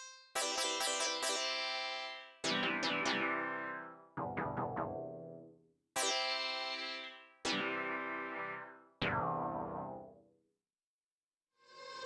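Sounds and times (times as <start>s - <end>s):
plucked synthesizer notes: 2.4s - 10.2s.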